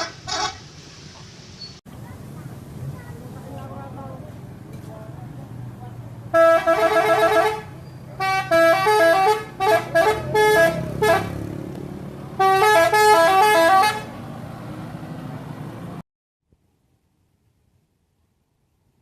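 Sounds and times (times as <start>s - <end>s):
bus horn melody: 6.3s - 11.5s, 12.4s - 14.2s.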